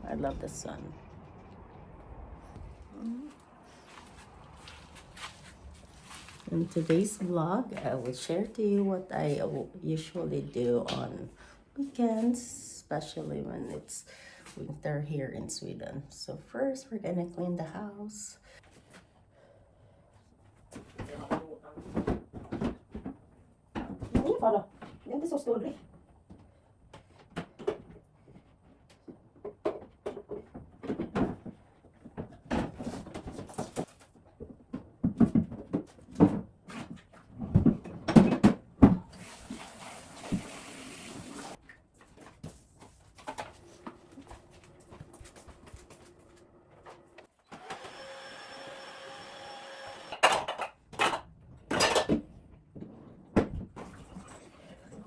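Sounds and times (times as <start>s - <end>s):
objects knocking and clattering: 20.8s - 25.0s, 29.0s - 39.1s, 50.2s - 54.1s
small machine whining: 47.4s - 50.2s.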